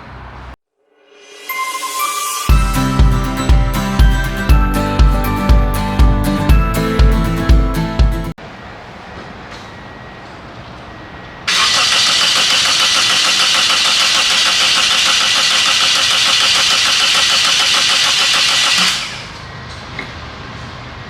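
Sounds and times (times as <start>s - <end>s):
starter cranking engine: 11.5s - 19.4s.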